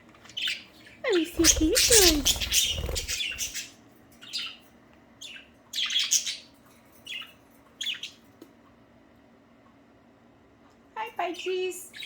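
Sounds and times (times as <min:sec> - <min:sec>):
budgerigars chirping: 0:00.3 - 0:03.7.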